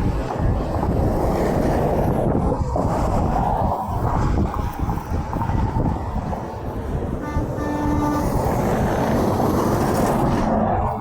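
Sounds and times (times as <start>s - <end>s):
highway traffic rumble: 0.0s - 11.0s
truck air horn blasts: 7.2s - 8.5s.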